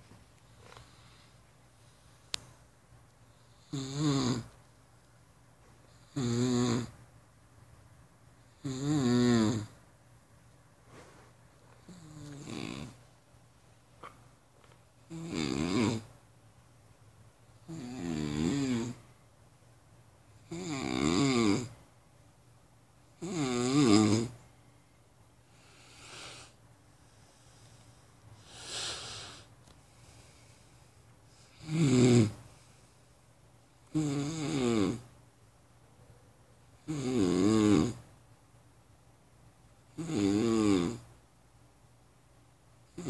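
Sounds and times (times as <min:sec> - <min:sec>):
faint breaths: 0:00.4 - 0:03.7, 0:10.8 - 0:13.1, 0:24.3 - 0:33.4
heavy snoring: 0:03.5 - 0:04.5, 0:06.0 - 0:06.9, 0:08.6 - 0:09.8, 0:11.9 - 0:13.0, 0:15.1 - 0:16.1, 0:17.6 - 0:19.0, 0:20.4 - 0:21.8, 0:23.2 - 0:24.4, 0:31.4 - 0:32.4, 0:33.9 - 0:35.1, 0:36.8 - 0:38.0, 0:40.0 - 0:41.1.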